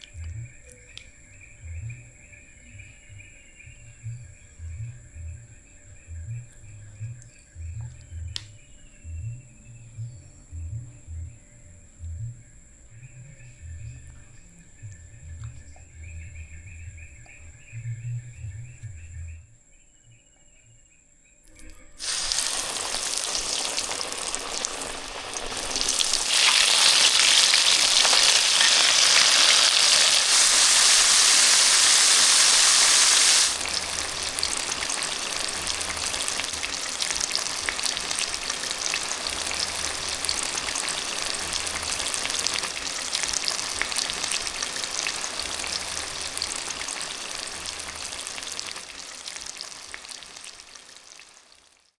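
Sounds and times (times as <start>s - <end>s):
heavy rain pouring: 22.0s - 49.8s.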